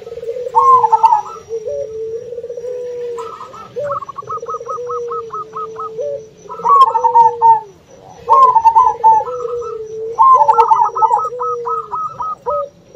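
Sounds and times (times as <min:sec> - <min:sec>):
doves cooing: 0:00.0 - 0:12.9.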